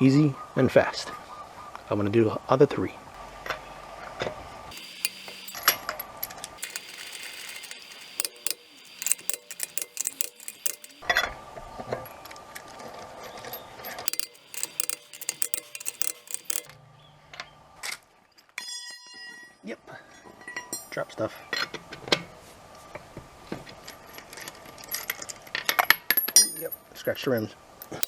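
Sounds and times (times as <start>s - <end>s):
ratchet wrench clicking: 4.7s - 5.7s, 6.6s - 11.1s, 14.1s - 16.7s
lug nuts clinking: 4.7s - 5.8s, 6.6s - 11.1s, 14.1s - 16.7s.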